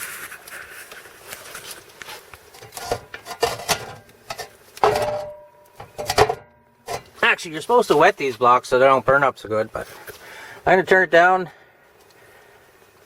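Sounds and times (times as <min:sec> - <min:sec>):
objects knocking and clicking: 0:02.6 - 0:07.2
faint steady tone: 0:02.7 - 0:07.1.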